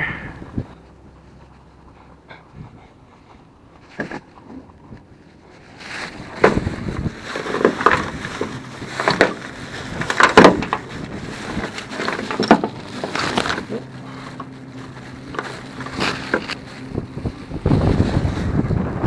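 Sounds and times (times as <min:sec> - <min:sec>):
wind buffeting microphone: 0:00.0 - 0:19.0
scrap metal clattering: 0:05.8 - 0:16.8.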